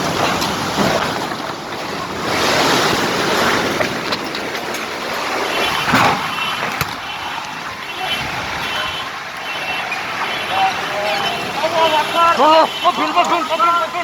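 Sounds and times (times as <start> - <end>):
rain: 0.0 - 14.0
strong wind gusting: 1.9 - 12.1.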